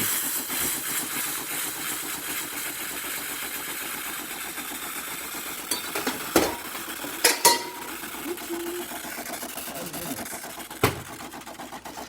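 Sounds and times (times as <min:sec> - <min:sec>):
espresso machine pump buzzing: 0:00.0 - 0:12.0
steam hissing and spitting: 0:00.0 - 0:12.0.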